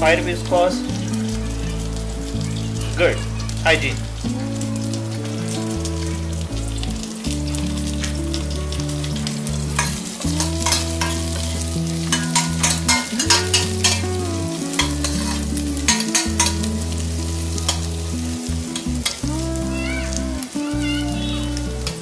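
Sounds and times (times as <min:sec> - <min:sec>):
onions sizzling in oil: 0:00.0 - 0:22.0
spatula scraping a pan: 0:12.1 - 0:14.0.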